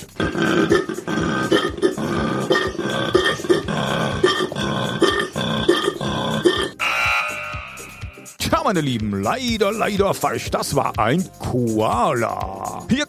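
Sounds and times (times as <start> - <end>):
koala bellowing: 0.1 - 8.3.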